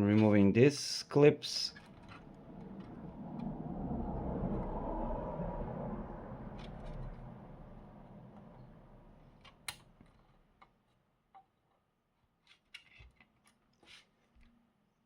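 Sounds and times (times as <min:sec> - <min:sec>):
low hum: 0:01.5 - 0:10.2.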